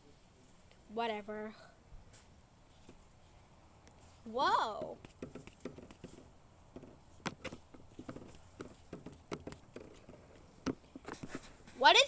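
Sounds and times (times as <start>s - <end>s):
taps and clicks on hard surface: 4.8s - 11.3s.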